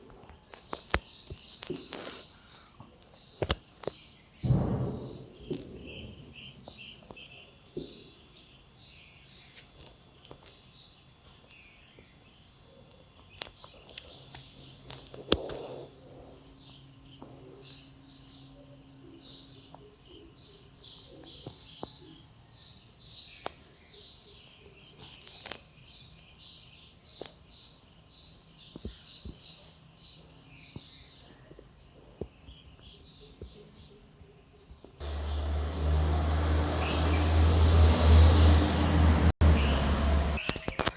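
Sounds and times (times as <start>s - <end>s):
bird chirps: 35.0s - 40.9s.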